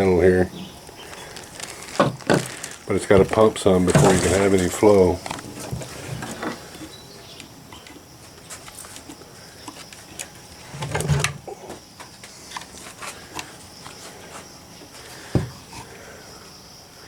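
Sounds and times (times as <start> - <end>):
pump parts clicking and tapping: 1.3 - 6.6.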